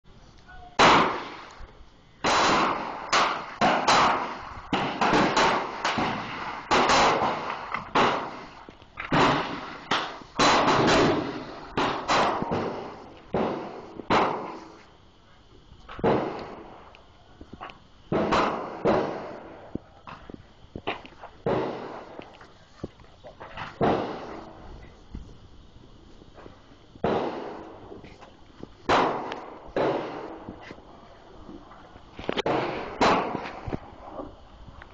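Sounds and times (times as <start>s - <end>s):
gunshots with echo: 0.8s - 1.5s, 2.2s - 8.5s, 9.1s - 14.6s, 18.1s - 19.6s, 21.4s - 22.2s, 27.0s - 27.7s, 28.9s - 30.4s, 32.4s - 33.4s.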